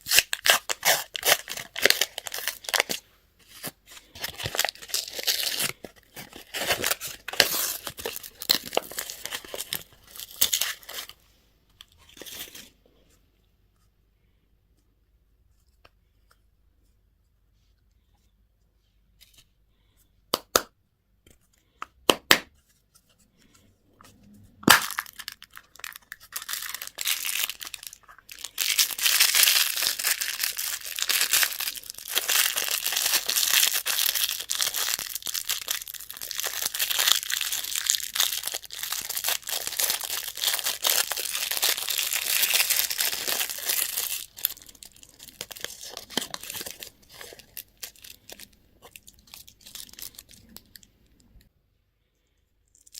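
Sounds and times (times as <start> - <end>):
candy wrapper crinkling and tearing: 0.0 - 11.2, 24.6 - 51.4, 52.6 - 52.9.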